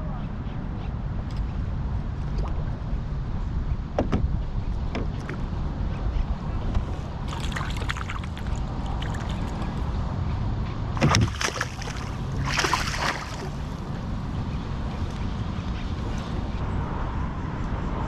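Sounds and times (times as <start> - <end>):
steady low rumble: 0.0 - 18.0
water sloshing and splashing: 6.6 - 10.0, 10.9 - 14.0
knocks against kayak: 11.0 - 12.6.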